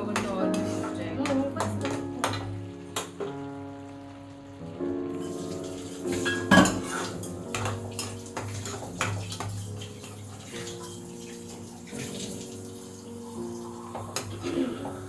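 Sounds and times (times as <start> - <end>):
background music: 0.0 - 15.0
dishes and cutlery clinking: 5.2 - 12.5.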